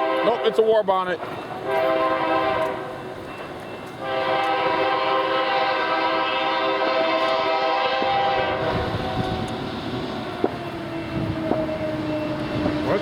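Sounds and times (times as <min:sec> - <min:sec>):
locomotive air horn: 0:00.0 - 0:00.8, 0:01.6 - 0:03.0, 0:04.0 - 0:09.8
train rumbling and clattering past: 0:00.0 - 0:13.0.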